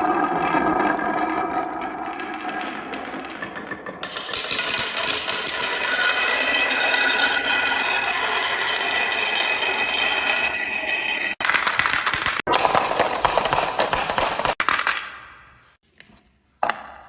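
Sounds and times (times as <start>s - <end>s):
toys rattling down marble run: 0.0s - 10.6s.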